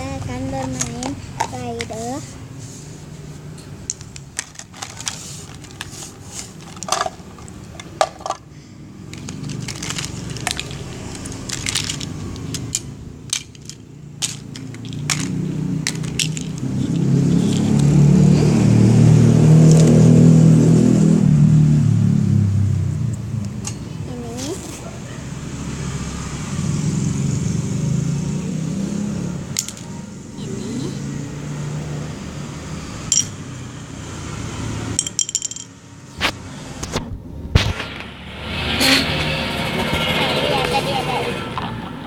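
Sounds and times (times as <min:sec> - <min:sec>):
passing motor vehicle rumble: 0:00.0 - 0:42.0
clicks and rattles of handling: 0:03.9 - 0:08.4, 0:09.1 - 0:17.8, 0:29.6 - 0:29.9.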